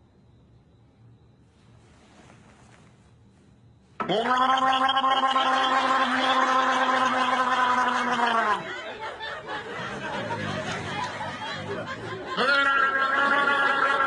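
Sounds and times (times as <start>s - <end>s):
soft snickering: 8.6s - 12.7s.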